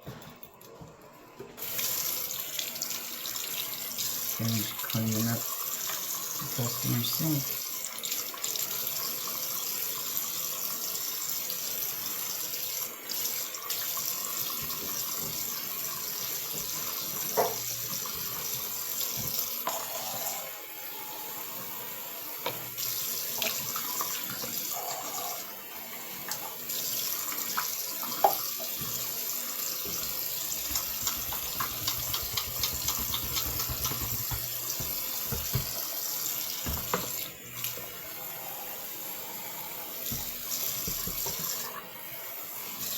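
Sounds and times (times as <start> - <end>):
faucet running into sink: 1.6 - 41.9.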